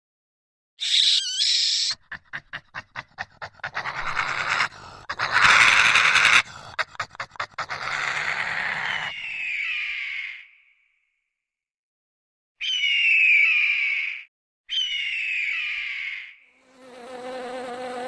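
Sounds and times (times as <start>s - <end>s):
animal panting: 1.9s - 8.0s.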